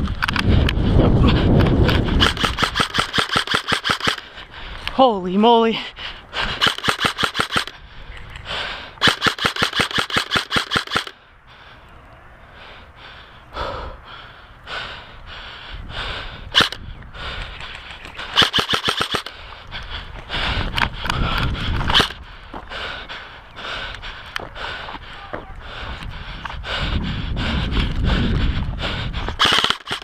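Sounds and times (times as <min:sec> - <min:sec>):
airsoft guns firing bursts: 0:02.2 - 0:04.3, 0:06.5 - 0:07.8, 0:09.0 - 0:11.2, 0:17.8 - 0:19.4, 0:29.4 - 0:30.0
single airsoft shots: 0:09.0 - 0:11.1.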